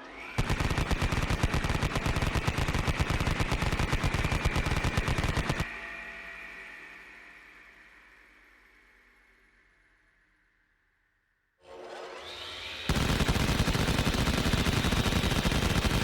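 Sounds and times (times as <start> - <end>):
high whine of spinning gun: 0.0 - 5.7, 12.2 - 16.0
rotary machine gun firing: 0.4 - 5.7, 12.9 - 16.0.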